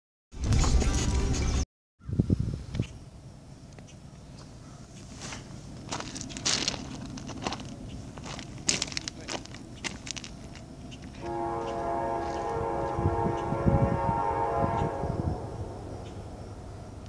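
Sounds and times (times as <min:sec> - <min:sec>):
low train rumble: 0:02.3 - 0:17.0
locomotive air horn blowing: 0:11.2 - 0:16.5.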